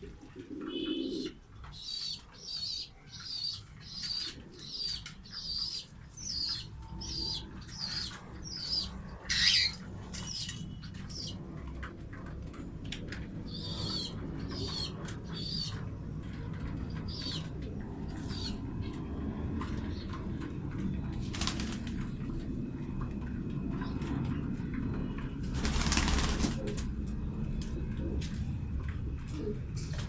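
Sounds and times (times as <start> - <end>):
pigeon cooing: 0.0 - 9.8
birds chirping: 0.1 - 28.4.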